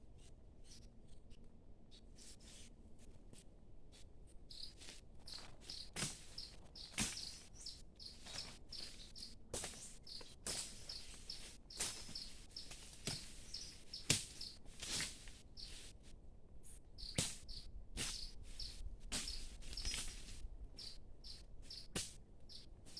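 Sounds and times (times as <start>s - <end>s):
sharp knocks or rustles: 5.4s - 7.5s, 9.5s - 11.1s, 14.0s - 15.2s, 17.1s - 18.2s.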